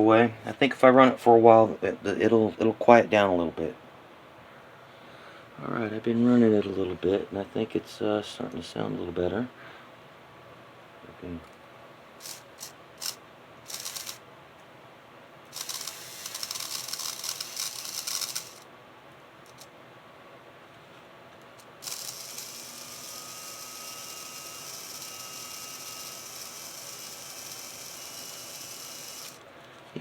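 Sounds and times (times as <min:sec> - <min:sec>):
small electric motor and gears running: 0:12.2 - 0:14.2, 0:15.5 - 0:18.7, 0:21.6 - 0:29.4.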